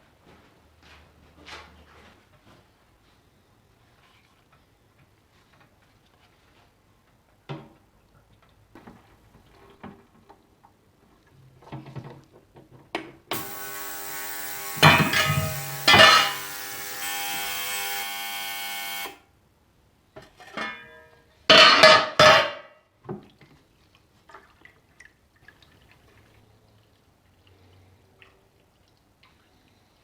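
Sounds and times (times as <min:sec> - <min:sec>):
motorised whir with hiss: 0:13.3 - 0:19.2.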